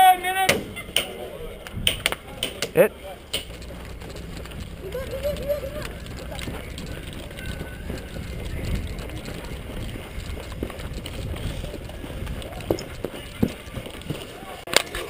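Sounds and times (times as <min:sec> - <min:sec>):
wind rumble on microphone: 0:03.5 - 0:14.4.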